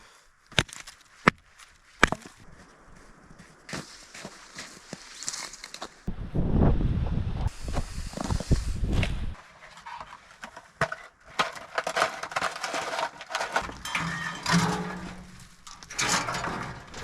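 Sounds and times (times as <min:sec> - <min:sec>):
dry branches snapping: 0:03.7 - 0:06.0
wood creaking: 0:09.7 - 0:17.0.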